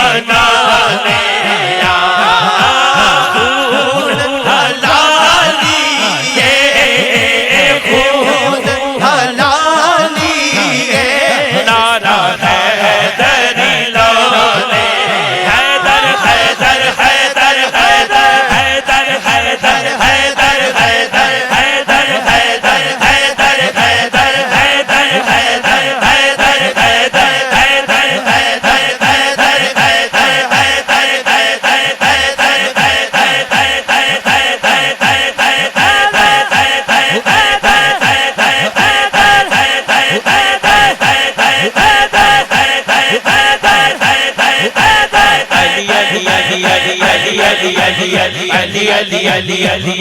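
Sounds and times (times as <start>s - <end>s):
men chanting together: 0.0s - 50.0s
steady drum beat: 0.3s - 8.8s, 9.4s - 12.8s.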